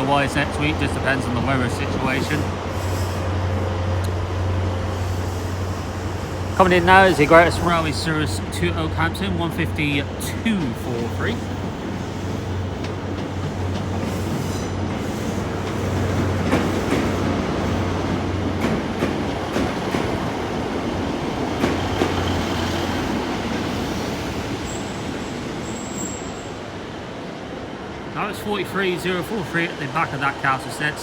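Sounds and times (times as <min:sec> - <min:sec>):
rolling train wheels: 0:00.0 - 0:31.0
train engine hum: 0:00.0 - 0:31.0
wheels clicking over rail joints: 0:06.6 - 0:23.6
faint high squeal: 0:25.6 - 0:26.5.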